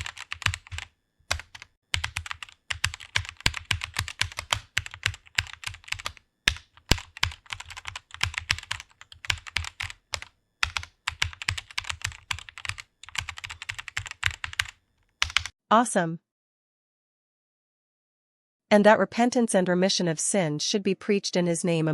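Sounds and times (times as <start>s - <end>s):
keyboard typing: 0.0s - 15.5s.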